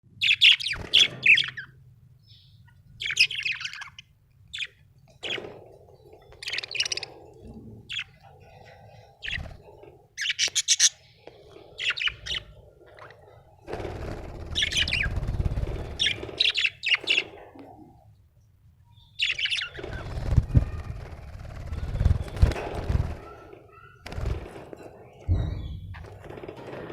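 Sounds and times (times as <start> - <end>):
budgerigar chirping: 10.2 - 11.0, 19.0 - 20.2.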